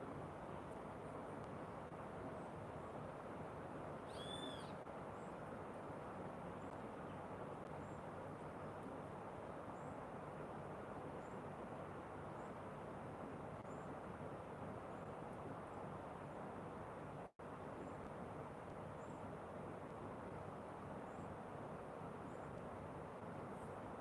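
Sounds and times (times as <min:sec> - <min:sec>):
faint high chirps: 0:04.0 - 0:04.8
bird call rising and falling: 0:04.1 - 0:04.8.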